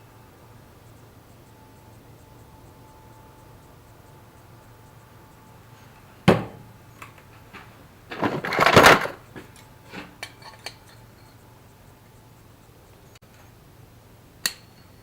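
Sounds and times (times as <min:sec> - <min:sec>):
metal pieces clattering: 0:07.6 - 0:11.0.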